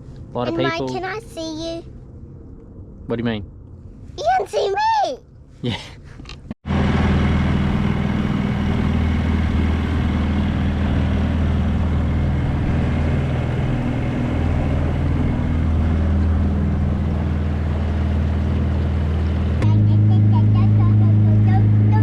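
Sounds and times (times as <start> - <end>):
boat motor running: 6.6 - 22.0.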